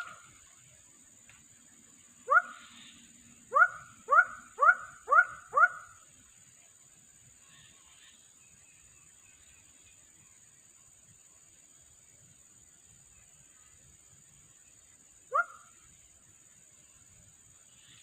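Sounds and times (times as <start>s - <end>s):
dog barking: 3.5s - 5.8s, 15.3s - 15.6s.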